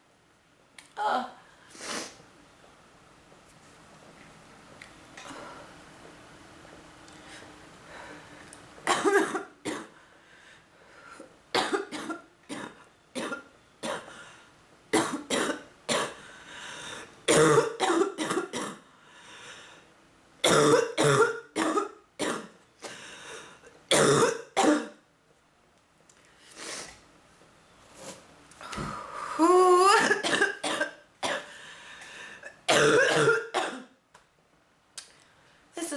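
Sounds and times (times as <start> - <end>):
woman coughing: 8.9 - 9.9, 11.6 - 14.1, 15.0 - 16.2, 17.3 - 18.8, 20.4 - 22.5, 23.9 - 25.0, 29.8 - 31.5, 32.7 - 33.9.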